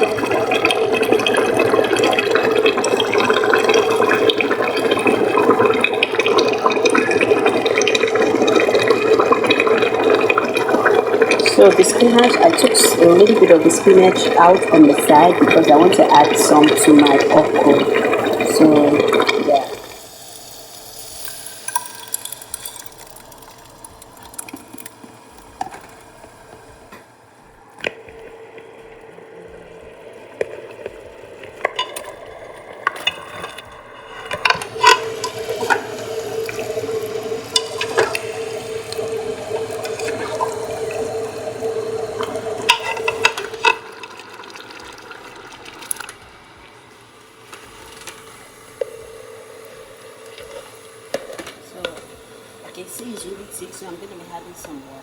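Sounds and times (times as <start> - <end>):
running or stirred liquid: 0.0 - 26.9, 27.8 - 55.0.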